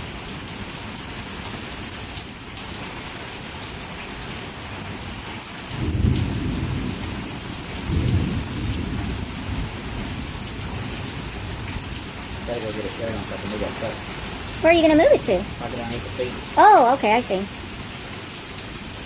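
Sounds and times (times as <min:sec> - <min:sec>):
heavy rain pouring: 0:00.0 - 0:19.0
low thunder rumbles: 0:05.7 - 0:17.2.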